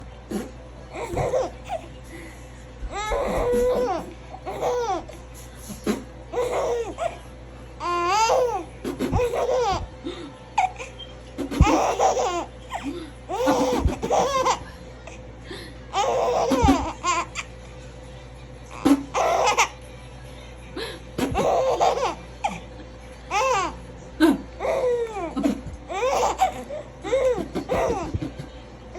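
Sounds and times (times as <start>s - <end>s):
baby laughing: 1.0s - 1.9s, 2.9s - 5.2s, 5.8s - 7.2s, 7.8s - 9.9s, 10.6s - 14.7s, 15.9s - 17.5s, 18.8s - 19.8s, 21.2s - 22.6s, 23.3s - 28.5s.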